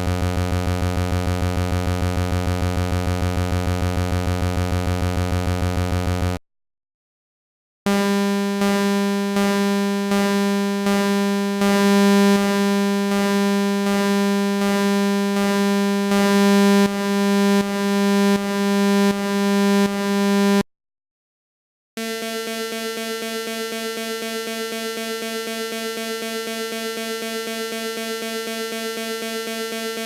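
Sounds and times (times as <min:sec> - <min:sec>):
low pulsing scanner buzz: 0:00.0 - 0:06.4.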